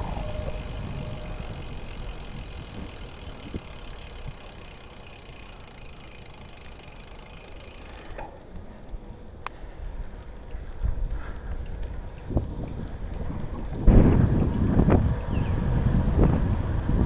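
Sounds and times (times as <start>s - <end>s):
high squeak: 0.0s - 2.4s
wind on microphone: 0.0s - 4.4s, 10.5s - 17.0s
bicycle tyres rumbling: 0.0s - 17.0s.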